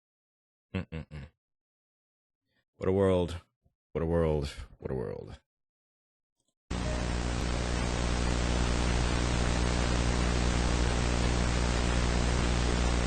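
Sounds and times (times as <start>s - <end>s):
static hiss: 6.7s - 13.0s
low electrical hum: 6.8s - 13.0s.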